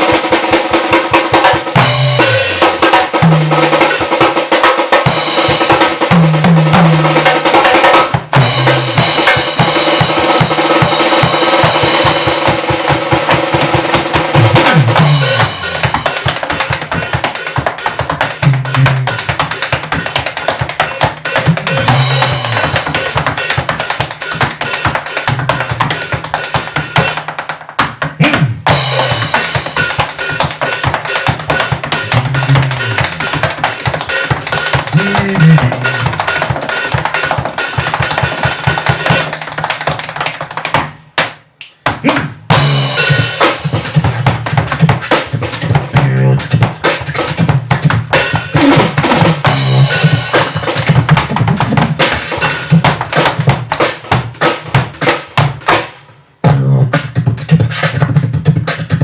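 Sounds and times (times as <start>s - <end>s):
drum kit: 0.0s - 59.0s
beatbox: 1.3s - 4.3s, 5.0s - 55.7s, 56.4s - 59.0s
tap dance: 7.0s - 45.9s, 46.5s - 55.9s
low bass line: 32.0s - 33.2s.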